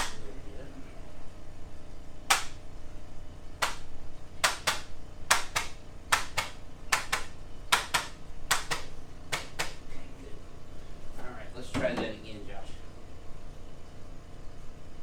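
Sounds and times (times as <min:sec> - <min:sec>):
sharp clicks in pairs: 0:00.0 - 0:00.2, 0:02.3 - 0:02.6, 0:03.6 - 0:09.8.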